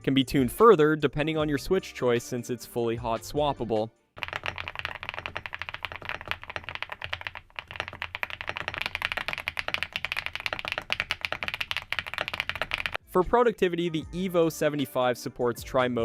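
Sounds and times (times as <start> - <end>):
fast typing on mechanical keyboard: 4.2 - 13.0.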